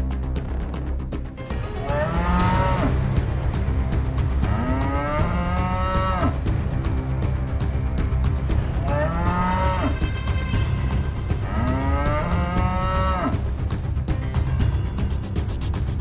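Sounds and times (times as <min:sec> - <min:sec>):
buffalo bellowing: 0:04.4 - 0:06.4, 0:08.6 - 0:10.0, 0:11.4 - 0:13.4.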